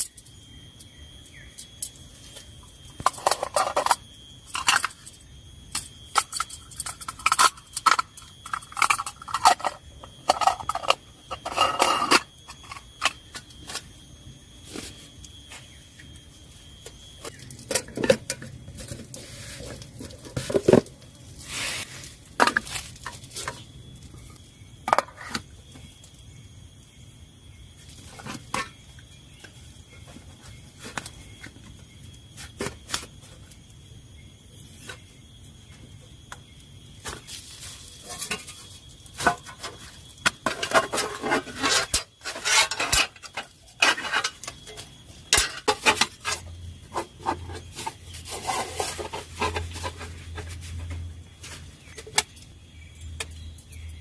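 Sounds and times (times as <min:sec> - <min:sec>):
utensils scraping: 0:05.8 - 0:13.8, 0:40.4 - 0:50.8.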